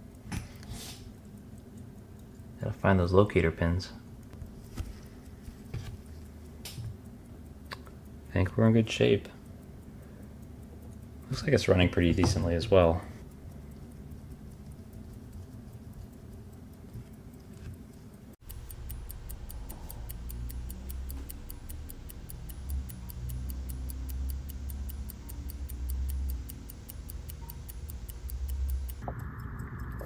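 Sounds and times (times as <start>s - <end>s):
pocket watch ticking: 1.2s - 2.6s, 6.0s - 30.0s
low hum: 18.4s - 30.0s.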